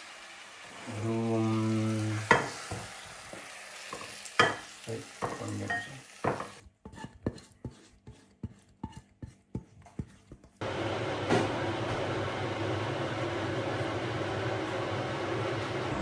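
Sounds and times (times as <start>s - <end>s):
faint sizzle: 0.0s - 6.6s
spoon clinking and scraping pan: 2.2s - 7.9s.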